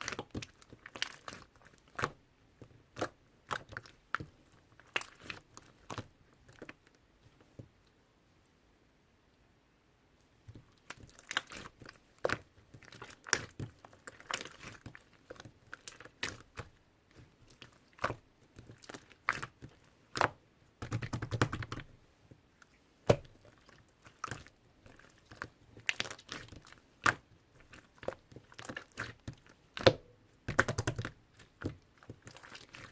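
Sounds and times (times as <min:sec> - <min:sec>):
slime popping and crackling: 0:23.1 - 0:32.9.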